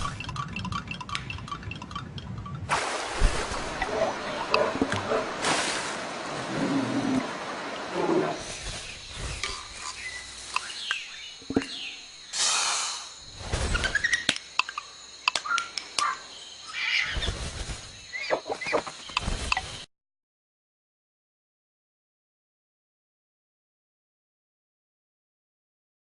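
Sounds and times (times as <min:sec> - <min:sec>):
sharp clicks: 0:14.3 - 0:16.1.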